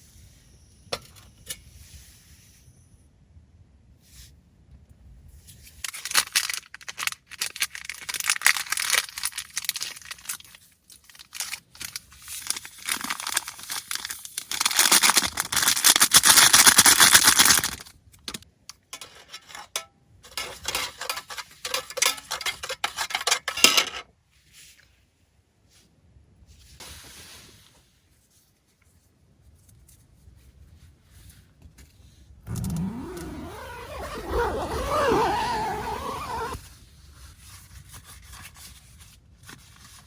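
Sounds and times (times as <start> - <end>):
material rustling and crinkling: 5.8 - 17.6, 32.5 - 40.0.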